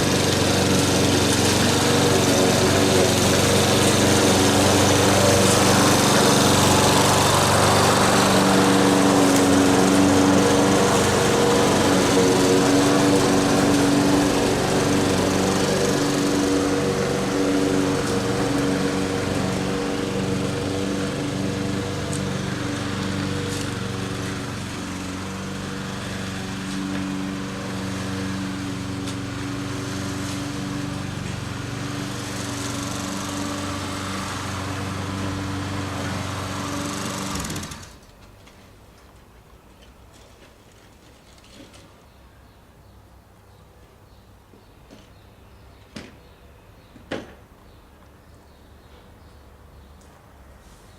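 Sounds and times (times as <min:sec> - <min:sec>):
lawn mower cutting grass: 0:00.0 - 0:38.3.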